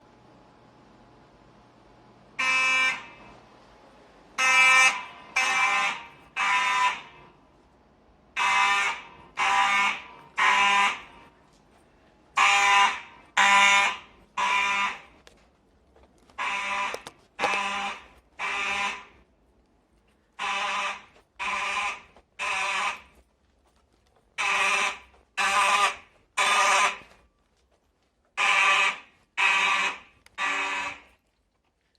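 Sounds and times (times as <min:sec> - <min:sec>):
fire alarm horns buzzing: 0:02.4 - 0:03.4, 0:04.4 - 0:07.4, 0:08.4 - 0:11.6, 0:12.3 - 0:15.4, 0:16.3 - 0:19.2, 0:20.4 - 0:23.2, 0:24.4 - 0:27.2, 0:28.4 - 0:31.3.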